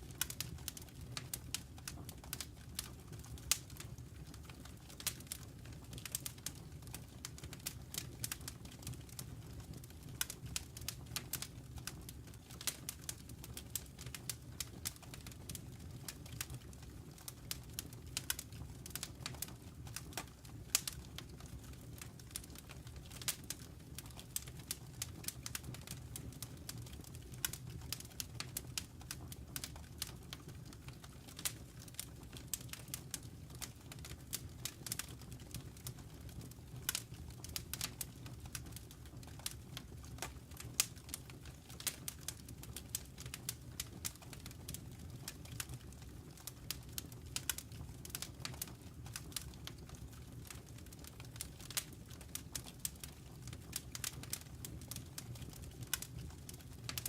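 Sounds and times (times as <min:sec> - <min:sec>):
low rumble of burning: 0:00.0 - 0:57.0
wood fire crackling: 0:00.0 - 0:57.0.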